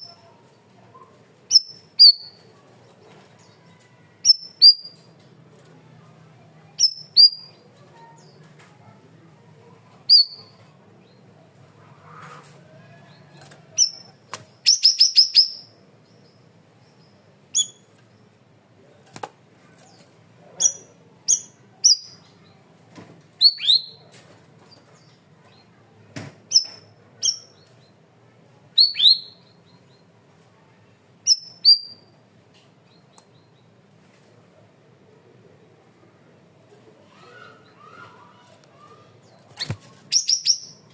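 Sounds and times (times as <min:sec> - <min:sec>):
songbird chirping and whistling: 0:01.5 - 0:02.4, 0:04.2 - 0:05.1, 0:06.8 - 0:07.6, 0:10.1 - 0:10.5, 0:13.8 - 0:15.8, 0:17.5 - 0:17.9, 0:23.4 - 0:24.0, 0:26.5 - 0:27.9, 0:28.8 - 0:30.0, 0:31.3 - 0:32.1, 0:39.6 - 0:40.9.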